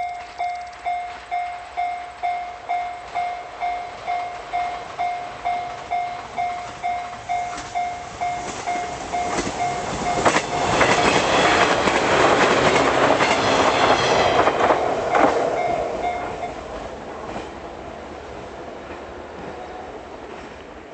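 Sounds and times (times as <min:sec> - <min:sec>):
level crossing bell ringing: 0:00.0 - 0:11.3
train rumbling over rail joints: 0:00.0 - 0:20.9.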